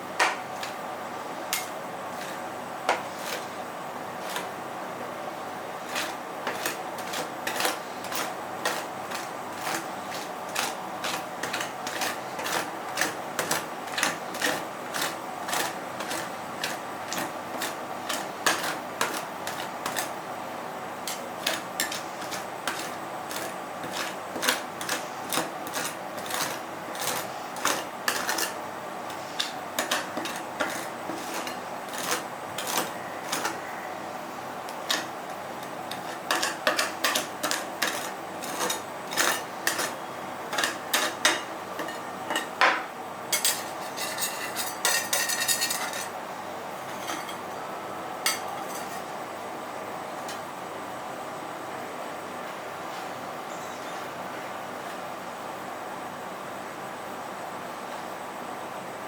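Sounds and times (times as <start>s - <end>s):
steady hum: 0.0s - 59.0s
metal spatulas scraping cold plate: 1.5s - 3.6s, 4.2s - 4.6s, 5.8s - 20.2s, 21.0s - 33.9s, 34.7s - 42.6s, 43.3s - 46.2s, 46.9s - 47.4s, 48.3s - 49.1s.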